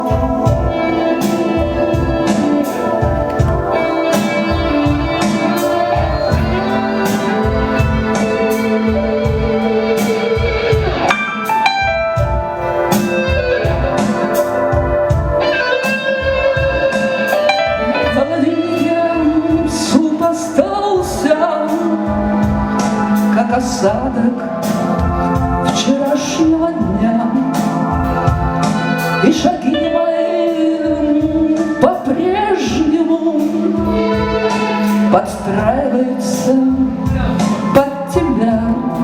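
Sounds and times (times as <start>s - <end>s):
steady drum beat: 0.0s - 29.8s, 30.8s - 39.0s
electronic keyboard chords: 0.0s - 39.0s.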